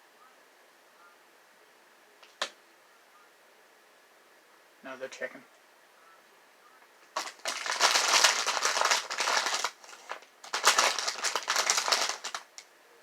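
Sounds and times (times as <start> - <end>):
plastic bag crinkling: 7.1 - 12.7.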